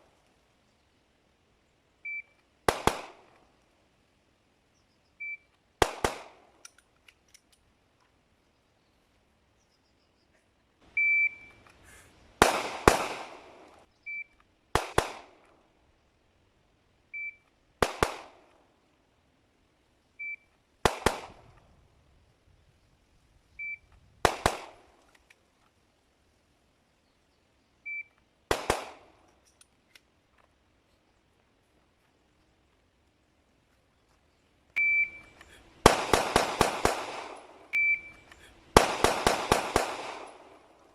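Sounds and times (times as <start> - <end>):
airsoft gun shots: 2.7 - 3.2, 5.8 - 6.4, 12.4 - 13.8, 34.8 - 40.6
shot timer beep: 11.0 - 11.6, 34.8 - 35.4, 37.8 - 38.3.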